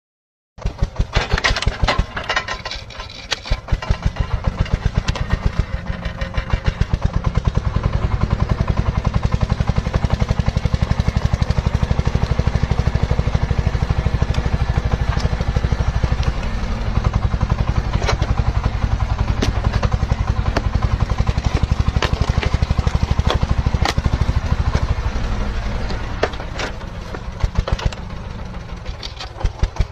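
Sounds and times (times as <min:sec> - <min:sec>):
sharp knocks and cracks: 0:00.6 - 0:07.7, 0:17.7 - 0:25.0, 0:25.8 - 0:29.9
excavator diesel engine running: 0:00.6 - 0:29.9.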